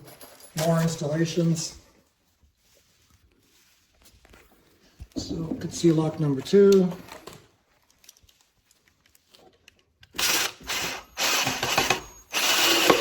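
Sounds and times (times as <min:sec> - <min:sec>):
cordless drill driving screw: 0:10.1 - 0:13.0.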